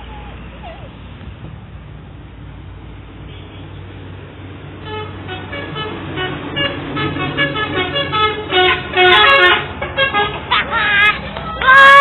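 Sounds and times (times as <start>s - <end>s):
musical bus air horn: 4.8s - 12.0s.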